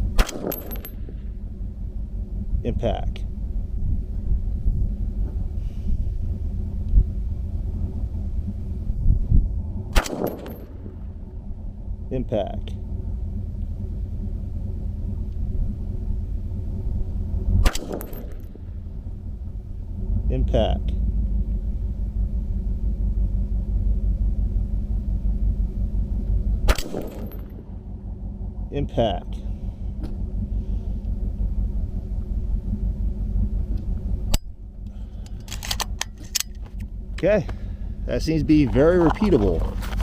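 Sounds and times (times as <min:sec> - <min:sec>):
steady low rumble: 0:00.0 - 0:40.0
rifle shot: 0:00.2 - 0:01.0, 0:09.9 - 0:10.8, 0:17.6 - 0:18.5, 0:26.7 - 0:27.6
high metallic ringing: 0:00.4 - 0:01.3.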